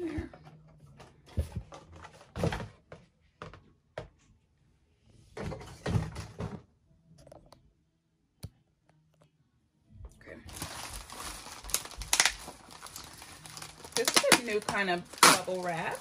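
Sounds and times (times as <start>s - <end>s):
packaging rustling: 10.5s - 16.0s.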